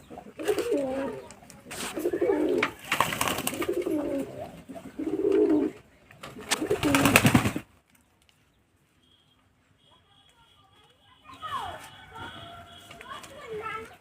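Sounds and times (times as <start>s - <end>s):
pigeons cooing: 0.0s - 7.6s.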